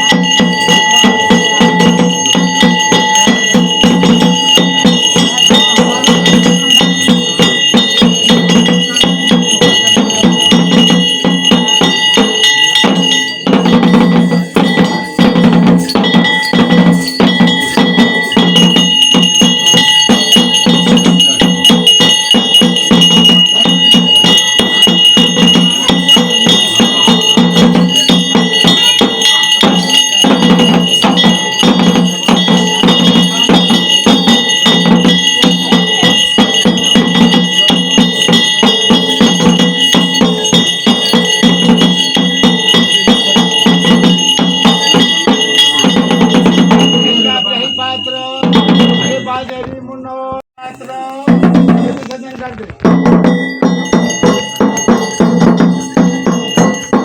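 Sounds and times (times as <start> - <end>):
low drumbeat: 0.0 - 49.6, 50.9 - 57.0
metal bells clattering: 0.0 - 49.9, 50.6 - 57.0.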